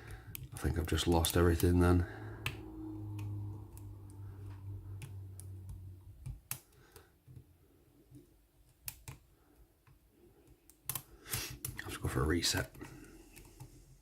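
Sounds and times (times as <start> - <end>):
low steady hum: 0.0 - 10.6.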